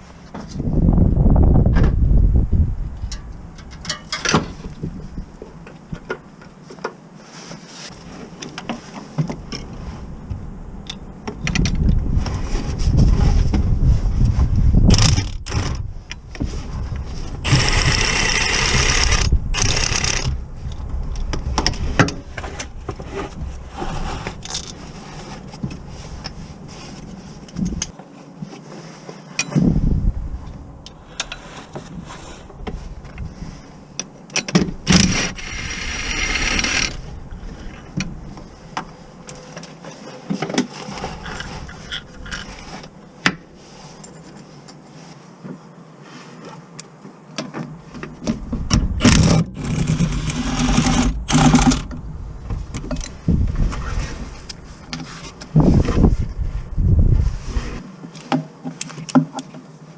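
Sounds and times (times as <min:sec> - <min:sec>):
metal tools clinking and scraping: 0:03.1 - 0:04.4, 0:43.9 - 0:44.8.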